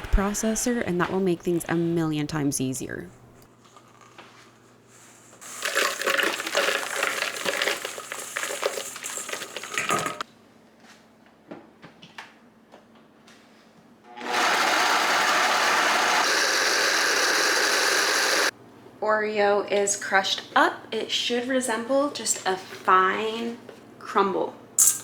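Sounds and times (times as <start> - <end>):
blender grinding: 5.4 - 10.2, 14.1 - 18.5
cookie pieces rattling into blender: 5.4 - 10.2.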